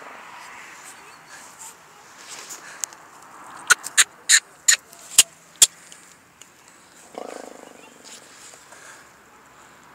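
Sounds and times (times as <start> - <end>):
pony snorting: 7.1 - 7.7.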